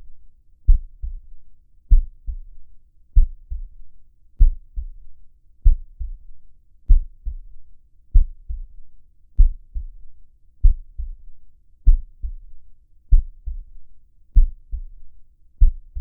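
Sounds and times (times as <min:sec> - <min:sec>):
slow heartbeat: 0:00.7 - 0:02.6, 0:03.2 - 0:03.8, 0:04.4 - 0:13.8, 0:14.4 - 0:16.0.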